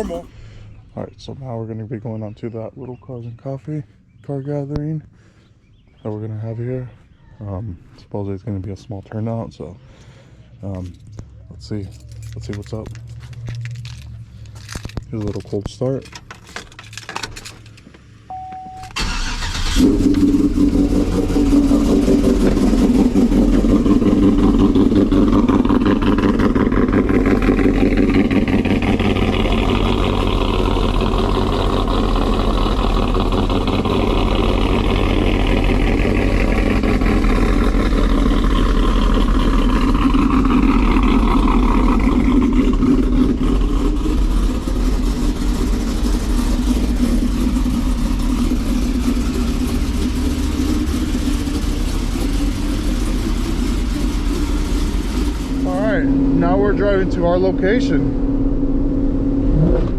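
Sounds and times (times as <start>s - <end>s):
engine cranking and starting: 10.9s - 17.9s, 18.9s - 55.7s
short beep: 18.3s - 19.0s
loud engine idling: 19.0s - 59.4s.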